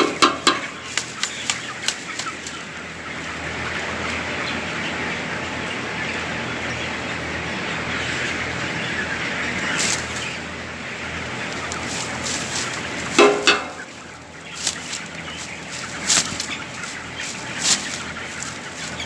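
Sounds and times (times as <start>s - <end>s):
chicken flock din: 0.0s - 19.0s
chicken wings flapping: 0.6s - 3.3s, 9.7s - 10.3s, 11.3s - 13.5s, 14.5s - 19.0s
sharp knocks: 13.2s - 13.9s.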